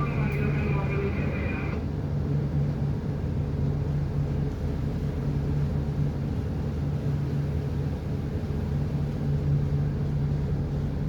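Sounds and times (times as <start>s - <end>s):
marine diesel engine running: 0.0s - 2.0s.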